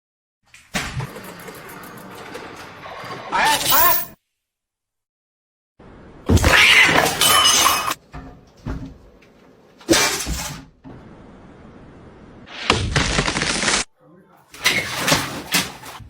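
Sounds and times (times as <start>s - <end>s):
cat crying out: 6.3s - 7.9s.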